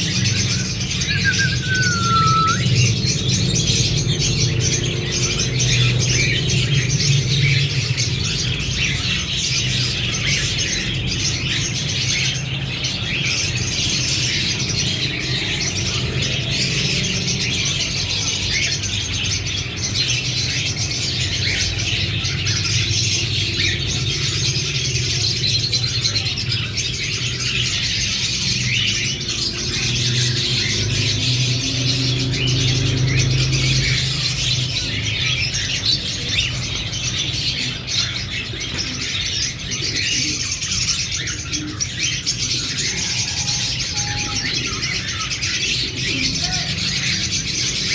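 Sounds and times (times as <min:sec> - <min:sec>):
cockatiels chirping: 0:00.0 - 0:16.2.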